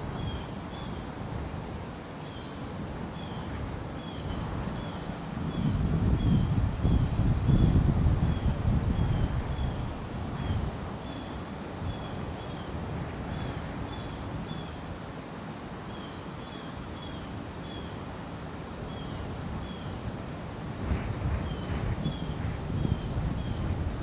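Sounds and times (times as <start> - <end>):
wind blowing: 0.0 - 15.9, 16.8 - 24.0
wind buffeting microphone: 2.7 - 14.6, 19.2 - 24.0.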